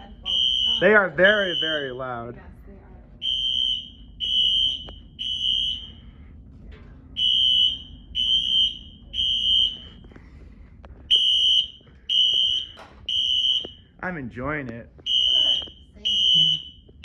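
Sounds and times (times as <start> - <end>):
fire alarm horn beeps: 0.0 - 2.2, 3.2 - 6.2, 7.2 - 10.1, 11.1 - 14.0, 15.0 - 17.0.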